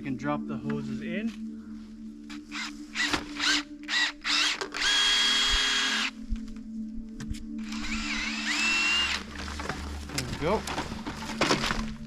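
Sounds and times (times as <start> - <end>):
power drill boring with high whine: 2.5 - 6.1, 7.6 - 9.2.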